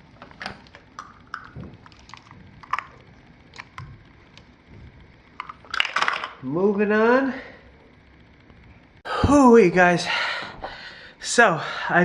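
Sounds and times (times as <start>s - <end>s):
plastic toy cups clicking: 0.4s - 3.0s, 5.4s - 6.4s.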